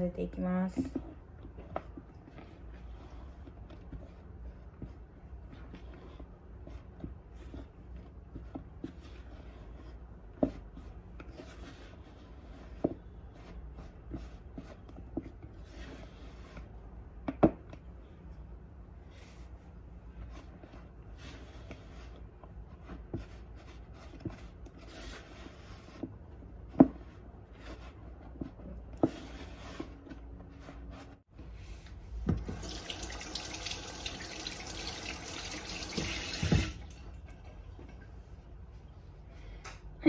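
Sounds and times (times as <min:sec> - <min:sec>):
water tap running: 0:32.4 - 0:37.2.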